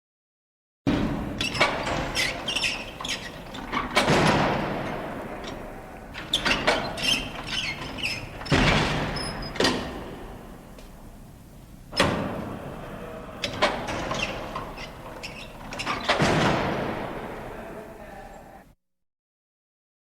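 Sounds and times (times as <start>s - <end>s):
metal door creaking on hinges: 0.9s - 10.7s, 11.9s - 17.5s
heavy booming impacts: 16.0s - 17.7s.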